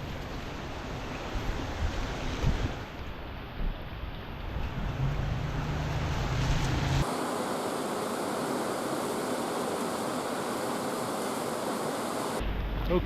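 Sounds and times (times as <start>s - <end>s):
wind rumble on microphone: 0.0s - 7.0s
steady rushing hiss: 5.9s - 13.0s.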